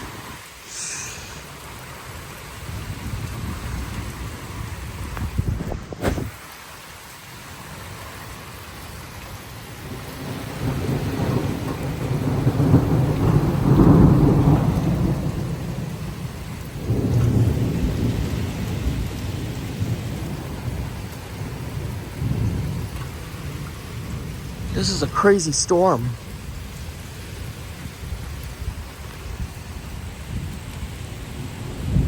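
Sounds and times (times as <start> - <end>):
heavy rain: 0.0 - 32.0
rolling thunder: 9.8 - 24.8, 27.3 - 32.0.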